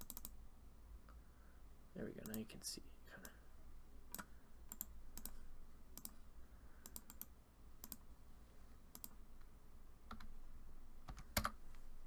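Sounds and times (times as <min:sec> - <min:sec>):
computer keyboard clicks: 0:00.0 - 0:00.4, 0:04.1 - 0:05.4, 0:06.0 - 0:06.2, 0:06.8 - 0:08.0, 0:08.9 - 0:09.2, 0:11.1 - 0:11.6.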